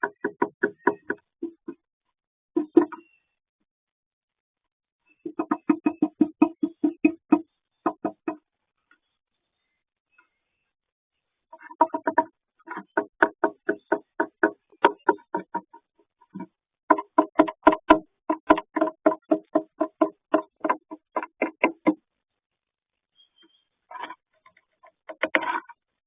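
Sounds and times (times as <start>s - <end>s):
bird beak knocking: 0.0s - 1.8s, 5.3s - 8.4s, 11.6s - 22.0s, 24.8s - 25.7s.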